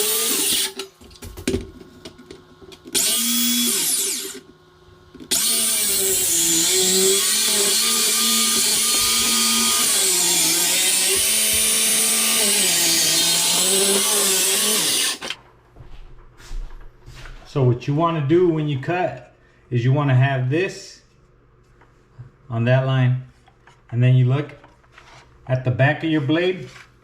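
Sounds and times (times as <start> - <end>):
circular saw cutting: 0.0 - 0.9, 3.0 - 4.4, 5.3 - 15.3.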